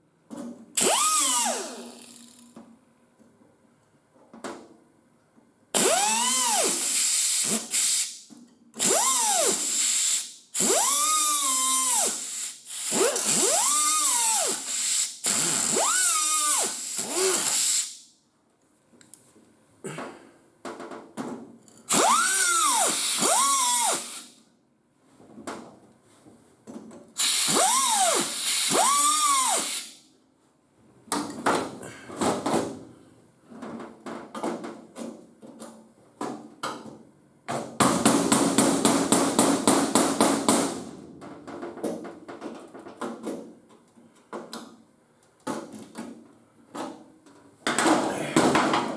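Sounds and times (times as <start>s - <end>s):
power drill whining: 0.8s - 2.4s, 5.8s - 7.9s, 8.8s - 17.9s, 21.9s - 24.2s, 27.2s - 29.9s.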